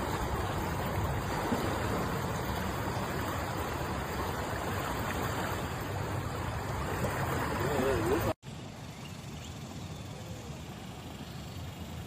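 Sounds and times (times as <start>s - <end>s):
floodwater rushing over road: 0.0s - 8.4s.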